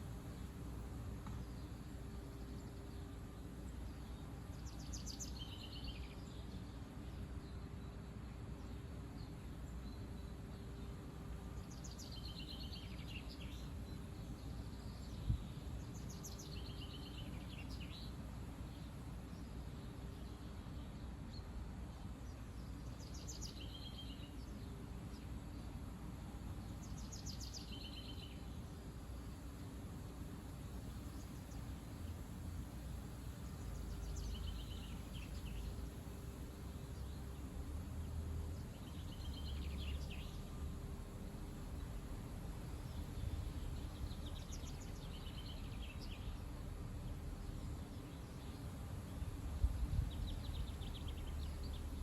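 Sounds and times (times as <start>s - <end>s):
songbird singing: 0.0s - 52.0s.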